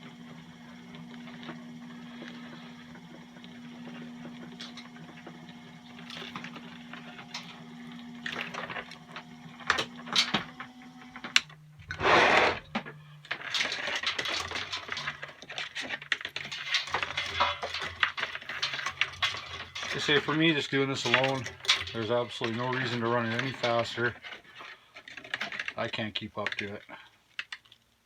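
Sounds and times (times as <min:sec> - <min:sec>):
electric wire stripper humming: 0:00.0 - 0:15.5
clicks and rattles of wire: 0:12.7 - 0:28.0.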